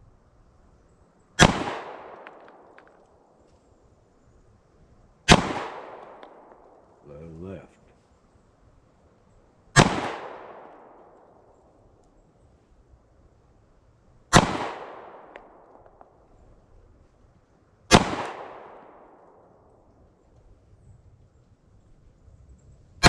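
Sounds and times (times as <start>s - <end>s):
pistol shots with echo: 1.4s - 3.2s, 5.3s - 6.8s, 9.7s - 11.5s, 14.3s - 16.2s, 17.9s - 19.8s.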